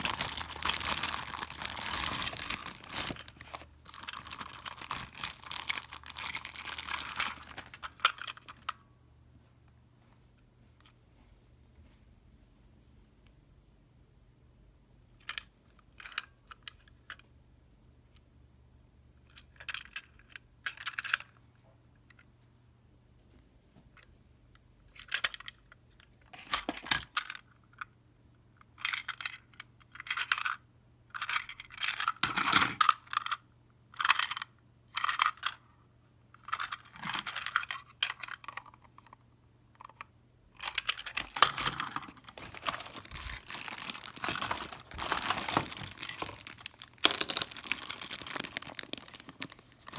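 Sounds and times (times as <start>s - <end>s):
packaging crinkling: 0.0s - 8.0s, 40.6s - 49.9s
cardboard and plastic packaging rustling: 0.0s - 8.5s, 40.6s - 49.9s.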